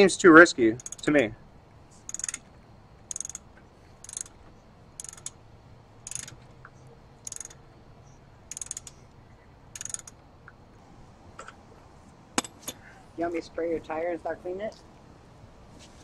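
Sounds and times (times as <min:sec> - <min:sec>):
ratchet wrench clicking: 0:00.7 - 0:01.2, 0:02.0 - 0:02.5, 0:03.1 - 0:04.4, 0:05.0 - 0:05.4, 0:06.0 - 0:06.4, 0:07.2 - 0:07.6, 0:08.5 - 0:09.0, 0:09.7 - 0:10.2.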